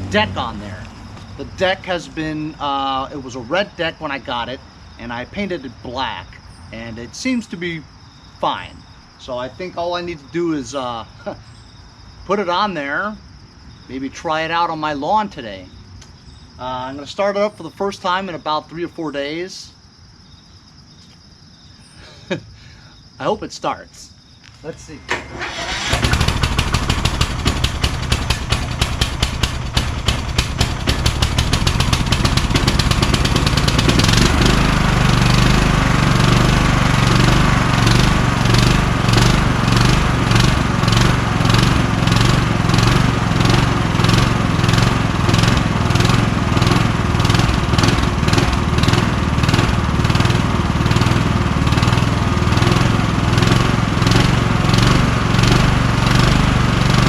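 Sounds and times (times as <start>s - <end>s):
lawn tractor engine running: 0.0s - 6.1s, 25.0s - 57.0s.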